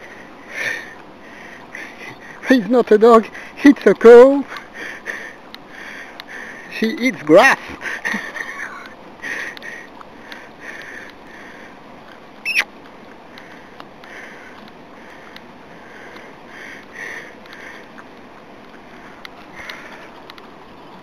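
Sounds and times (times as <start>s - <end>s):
high squeak: 12.5s - 12.7s.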